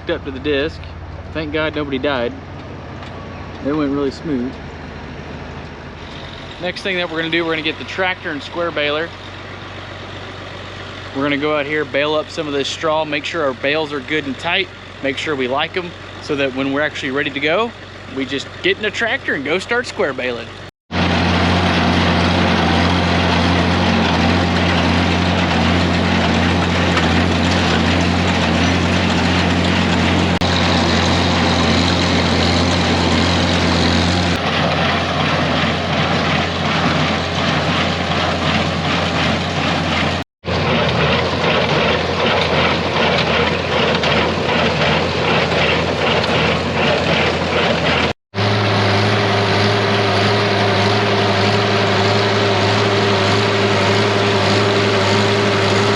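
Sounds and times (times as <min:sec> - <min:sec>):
tractor engine running: 0:00.0 - 0:55.9
baler rhythmic clatter: 0:21.8 - 0:48.1.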